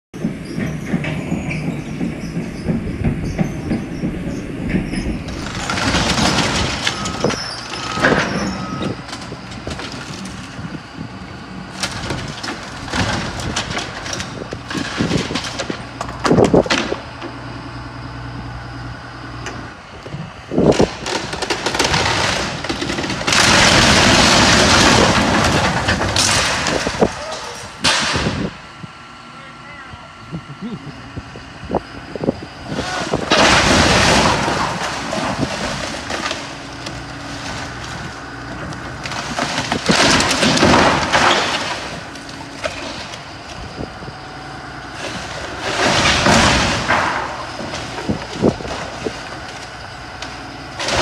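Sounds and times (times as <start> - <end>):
metal and timber clanking and creaking: 0.2 - 28.8, 30.5 - 51.0
engine running: 0.2 - 51.0
loud crashes: 0.9 - 10.7, 20.6 - 28.6, 32.7 - 36.5, 39.0 - 43.2, 44.9 - 49.4.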